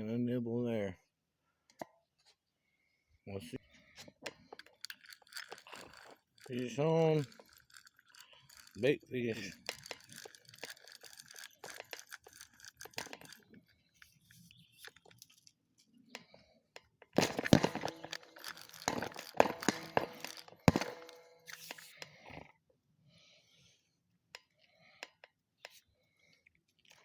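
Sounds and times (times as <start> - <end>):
rustling and crackling handling: 3.8 - 16.3, 16.9 - 22.0.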